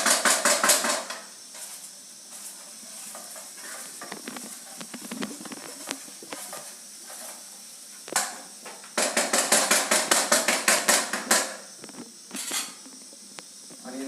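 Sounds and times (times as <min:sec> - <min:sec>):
food sizzling in a pan: 0:00.0 - 0:14.0
spatula scraping a pan: 0:01.0 - 0:07.7.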